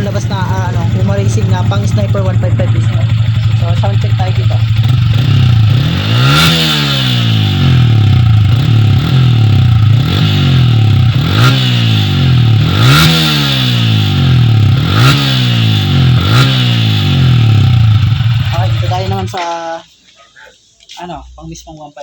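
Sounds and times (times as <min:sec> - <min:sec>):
motorcycle engine idling and revving: 0:00.0 - 0:19.8.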